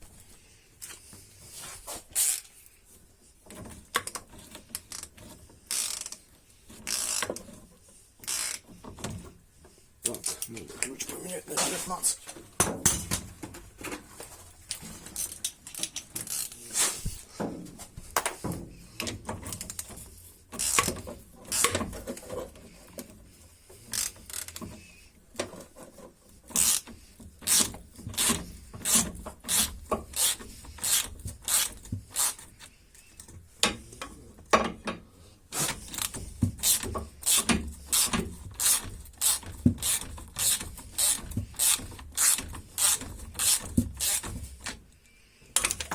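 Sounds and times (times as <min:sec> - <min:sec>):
ratchet wrench clicking: 0:05.7 - 0:06.2, 0:06.8 - 0:07.3, 0:08.2 - 0:08.6, 0:20.6 - 0:20.9, 0:23.9 - 0:24.6, 0:26.6 - 0:26.9, 0:27.5 - 0:32.4, 0:35.9 - 0:44.3.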